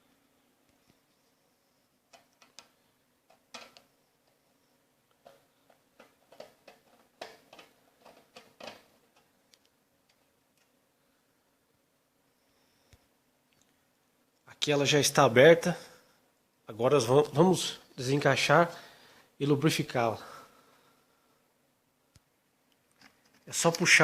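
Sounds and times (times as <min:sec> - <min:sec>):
metal casing being handled: 0:02.1 - 0:04.4, 0:05.1 - 0:10.7.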